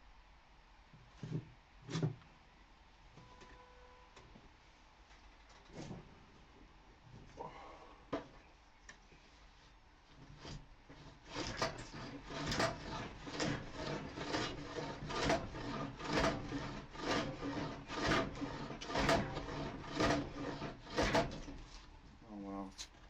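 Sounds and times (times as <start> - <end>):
hand plane rasping across wood: 10.1 - 21.8.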